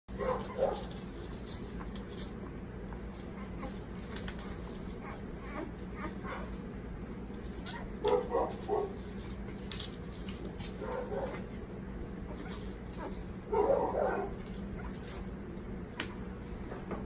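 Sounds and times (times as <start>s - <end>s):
puppies yipping and whimpering: 0.1s - 1.0s, 1.7s - 6.6s, 7.4s - 9.6s, 10.7s - 15.4s.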